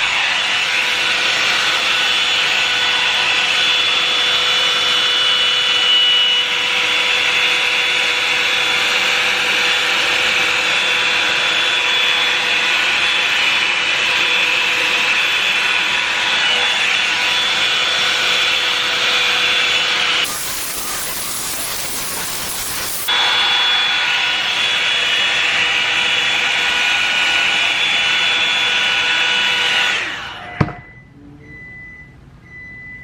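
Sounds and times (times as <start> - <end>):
hair dryer rushing air: 0.0 - 30.6
motor whine: 20.2 - 27.0.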